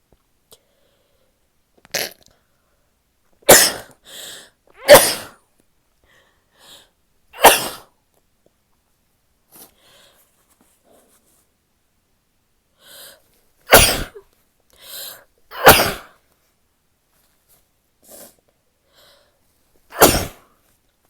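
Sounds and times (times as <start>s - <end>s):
faint breaths: 0.5s - 1.5s, 4.0s - 4.7s, 6.0s - 7.0s, 9.5s - 11.4s, 12.7s - 13.4s, 14.7s - 15.4s, 18.0s - 19.6s
woman sneezing: 3.5s - 4.0s, 4.8s - 5.4s, 7.4s - 7.9s, 13.7s - 14.3s, 15.5s - 16.1s, 19.9s - 20.5s.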